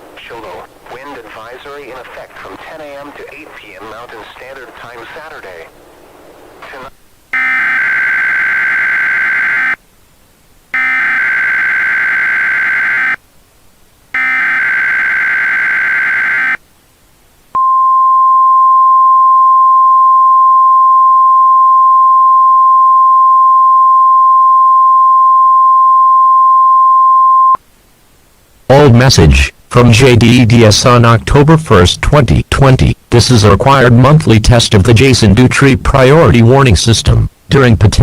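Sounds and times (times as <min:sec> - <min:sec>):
steady high warning beep: 0:10.8 - 0:13.2, 0:17.6 - 0:27.6.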